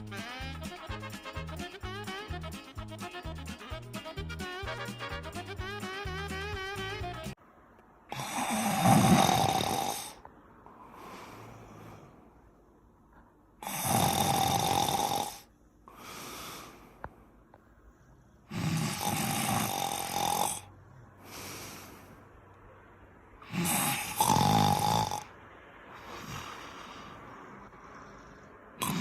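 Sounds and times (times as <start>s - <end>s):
dog snoring: 8.1s - 10.2s, 13.6s - 16.7s, 17.9s - 21.8s, 23.4s - 25.3s, 25.9s - 29.0s.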